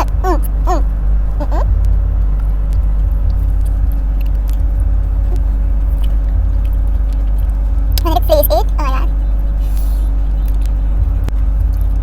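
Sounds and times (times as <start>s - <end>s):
constant hum: 0.0s - 12.0s
low rumble: 0.0s - 12.0s.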